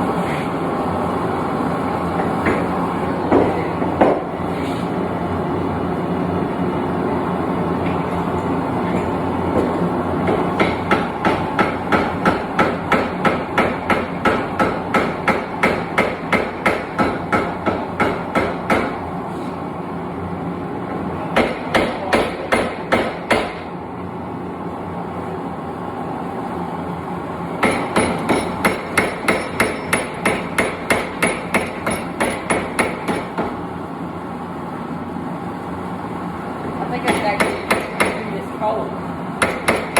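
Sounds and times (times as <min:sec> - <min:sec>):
hammer striking hot steel on anvil: 0:10.2 - 0:19.0, 0:21.3 - 0:23.7, 0:27.6 - 0:33.6, 0:37.0 - 0:38.3, 0:39.4 - 0:39.9.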